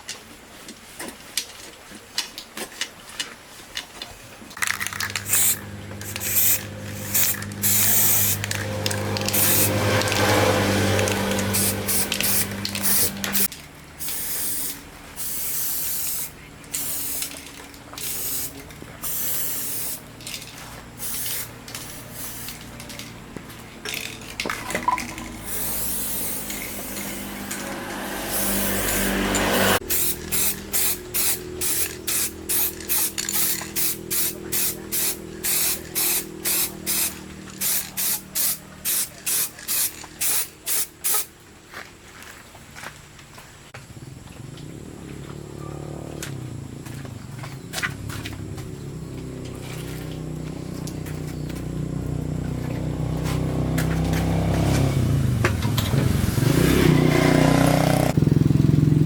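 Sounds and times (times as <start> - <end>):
hissing spray from nozzle: 4.6 - 23.0, 25.3 - 41.3
steady machine hum: 4.7 - 13.4.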